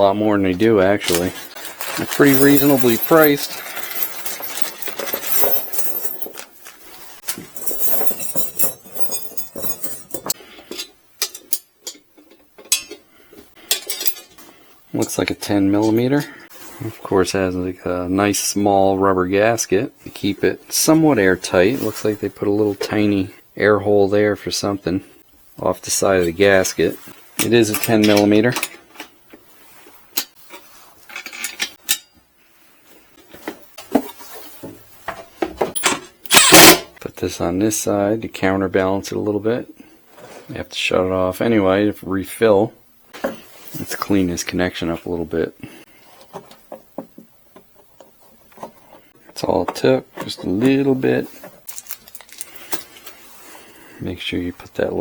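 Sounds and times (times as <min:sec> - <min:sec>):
handling noise: 0:00.4 - 0:11.6
metal parts clinking: 0:01.0 - 0:06.5, 0:07.2 - 0:13.0, 0:13.7 - 0:14.4, 0:35.8 - 0:36.9, 0:51.6 - 0:53.0.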